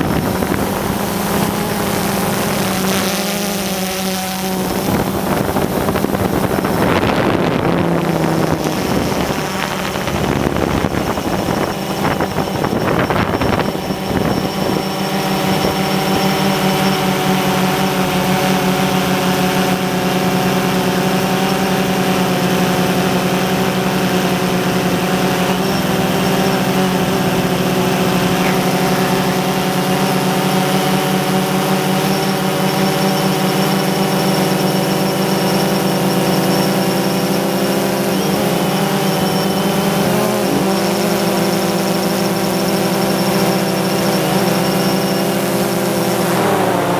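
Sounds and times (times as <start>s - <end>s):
drone propellers humming: 0.0s - 46.9s.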